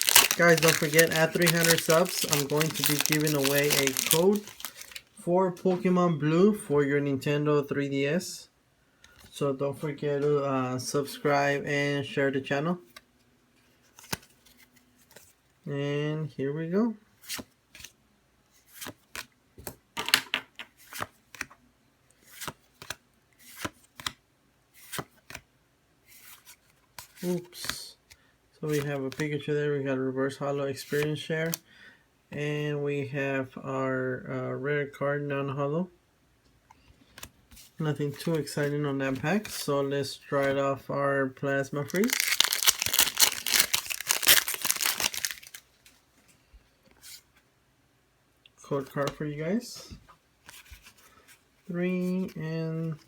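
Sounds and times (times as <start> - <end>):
foil wrapper crinkling: 0.0 - 5.1, 41.8 - 45.9
trading cards rustling and flicking: 0.0 - 5.1, 41.6 - 46.0.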